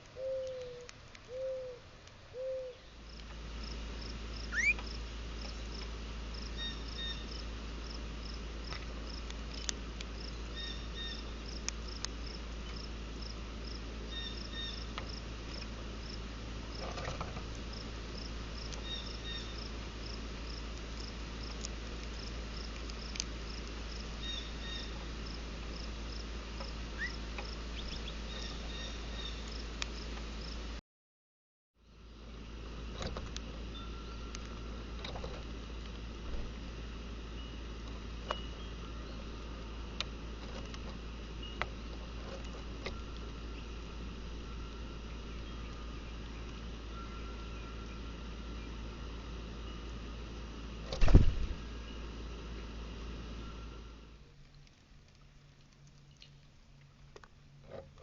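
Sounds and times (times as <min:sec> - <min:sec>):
dove cooing: 0:00.2 - 0:02.8
rising bird call: 0:00.2 - 0:02.9, 0:04.5 - 0:04.8
steady high chirping: 0:04.4 - 0:04.8
low hum: 0:31.8 - 0:58.0.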